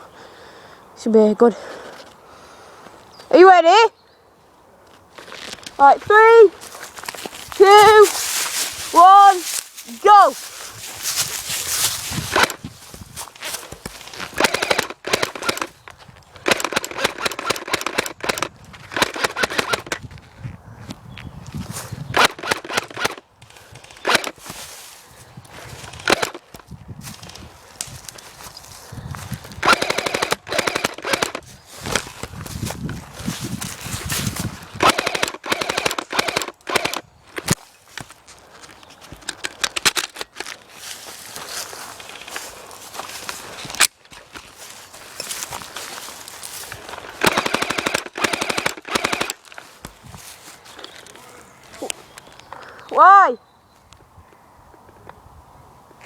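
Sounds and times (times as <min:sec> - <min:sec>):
airsoft rifles firing bursts: 0:14.3 - 0:15.7, 0:16.4 - 0:20.0, 0:22.2 - 0:23.2, 0:23.8 - 0:24.4, 0:26.0 - 0:26.4, 0:29.6 - 0:31.4, 0:34.8 - 0:37.0, 0:47.0 - 0:49.4.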